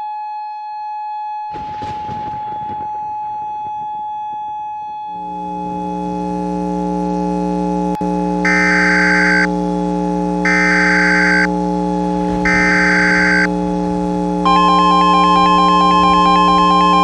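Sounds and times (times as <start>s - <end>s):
electronic buzzing hum: 3.8s - 17.0s
high alert tones: 8.5s - 9.5s, 10.4s - 17.0s.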